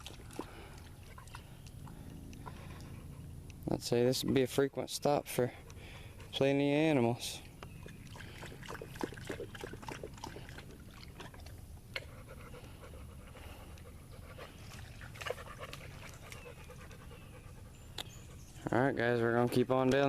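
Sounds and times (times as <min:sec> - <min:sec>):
dog panting: 0:05.5 - 0:06.8, 0:12.0 - 0:19.9.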